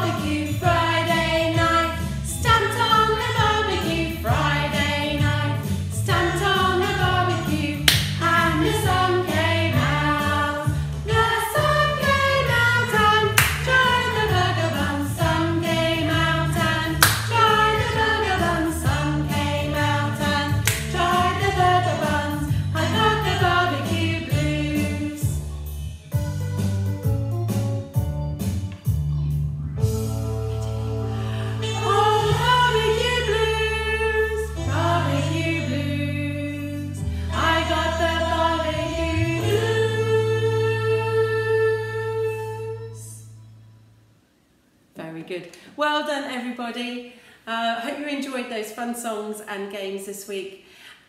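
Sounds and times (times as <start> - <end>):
children's song over backing track: 0.0 - 43.7
percussion hits: 7.8 - 14.5, 15.2 - 24.4.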